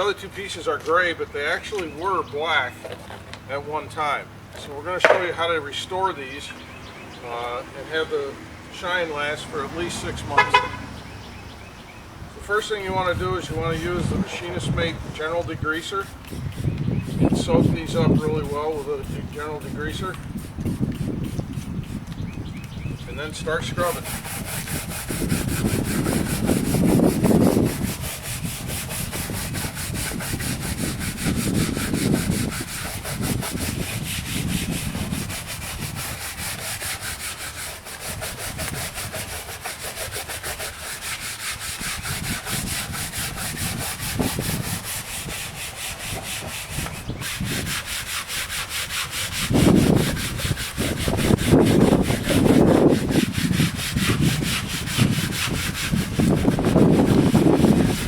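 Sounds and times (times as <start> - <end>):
scrubbing plastic trim: 4.6 - 5.6, 12.4 - 22.4, 23.1 - 58.0.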